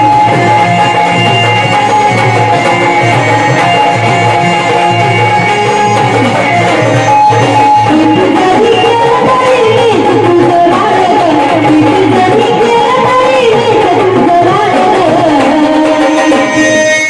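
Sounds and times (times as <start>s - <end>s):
sustained melody instrument: 0.0s - 10.1s
hand drum rhythm: 0.0s - 16.4s.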